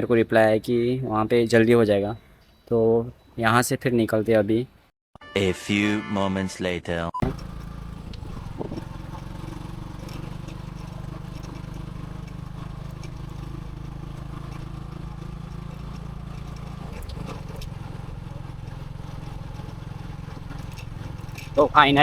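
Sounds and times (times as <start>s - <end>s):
motorcycle engine running: 7.2s - 22.0s.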